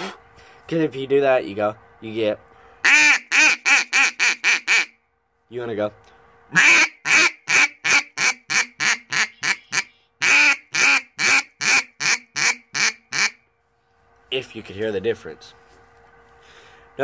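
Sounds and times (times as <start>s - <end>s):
duck call quacks: 2.8s - 5.0s, 6.5s - 13.4s.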